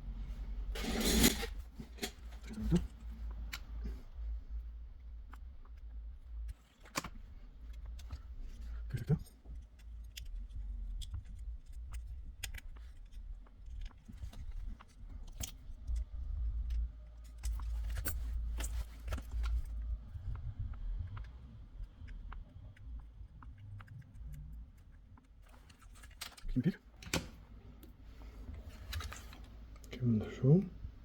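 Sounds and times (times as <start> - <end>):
low steady hum: 0.0 - 31.0.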